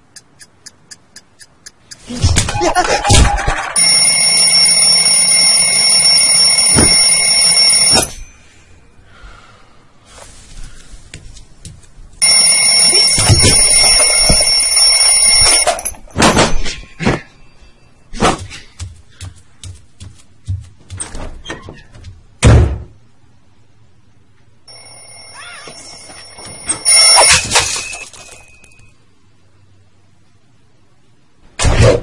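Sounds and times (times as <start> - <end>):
alarm clock bell ringing: 3.8 - 8.4, 12.2 - 16.6, 24.7 - 28.9.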